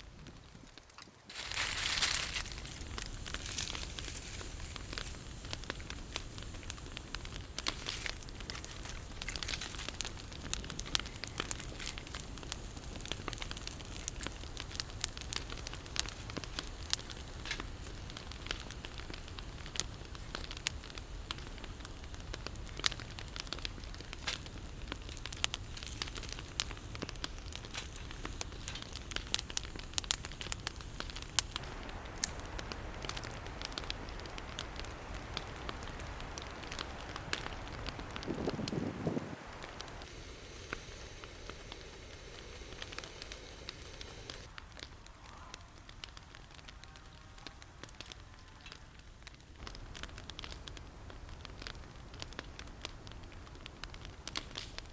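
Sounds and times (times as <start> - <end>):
campfire crackling and popping: 0.0 - 54.9
low fire rumble: 0.0 - 54.9.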